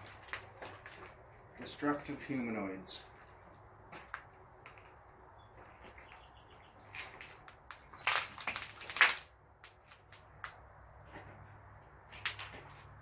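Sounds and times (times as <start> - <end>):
footsteps crunching over debris: 0.0 - 10.4.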